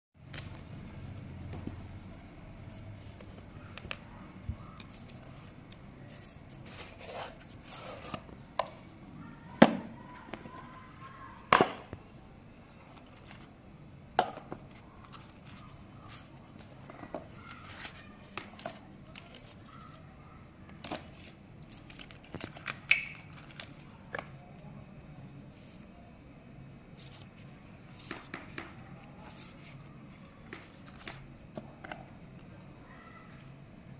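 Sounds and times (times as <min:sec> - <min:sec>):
packaging crinkling and tearing: 0:21.1 - 0:23.9.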